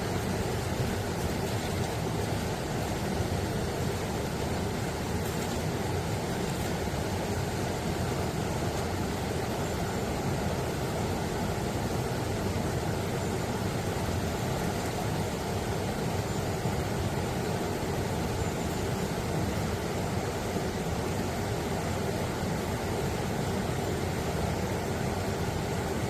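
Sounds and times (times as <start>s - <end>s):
stream rushing over rocks: 0.0s - 26.0s.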